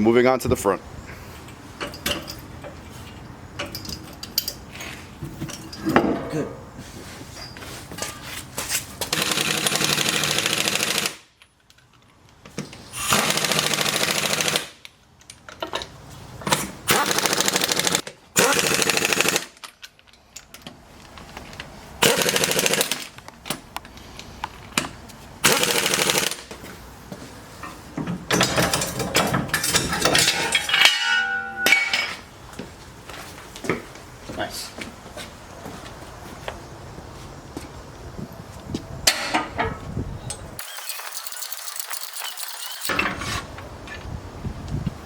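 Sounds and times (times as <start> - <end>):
pneumatic impact wrench hammering: 9.0 - 11.2, 12.9 - 14.8, 16.5 - 19.6, 22.0 - 23.1, 25.4 - 26.4, 40.6 - 43.3.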